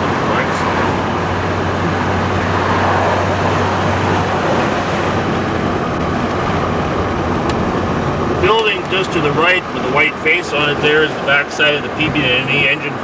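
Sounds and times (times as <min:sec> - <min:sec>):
train rumbling: 0:00.0 - 0:09.4.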